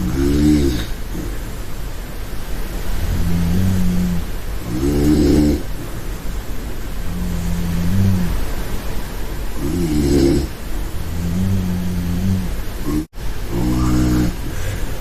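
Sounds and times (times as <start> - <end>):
woman snoring: 0.0 - 1.3, 2.9 - 5.7, 7.0 - 8.4, 9.6 - 14.8.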